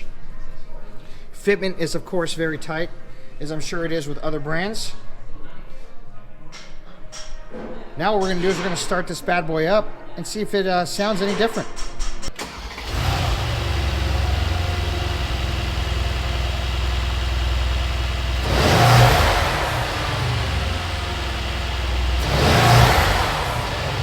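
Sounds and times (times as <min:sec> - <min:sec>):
car engine idling and revving: 0:12.4 - 0:24.0.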